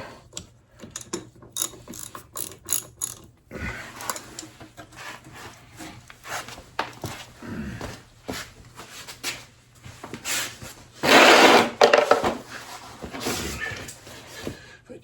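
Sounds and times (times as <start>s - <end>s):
clicks and knocks of parts: 0.3s - 3.3s
loud scraping rub: 10.3s - 13.8s.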